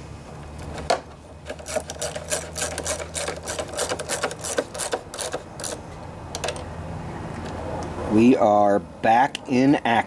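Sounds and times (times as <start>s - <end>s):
ratchet wrench clicking: 1.5s - 5.8s.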